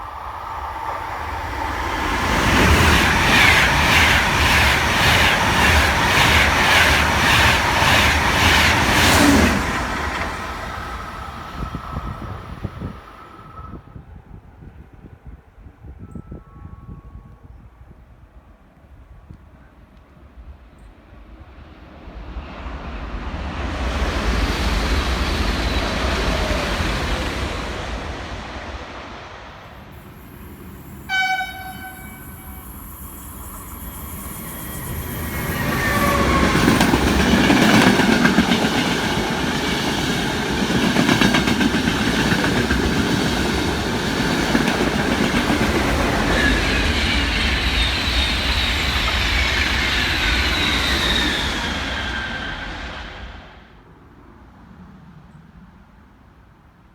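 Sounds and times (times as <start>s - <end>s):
train passing: 0.0s - 56.9s
train horn blast: 31.0s - 32.8s.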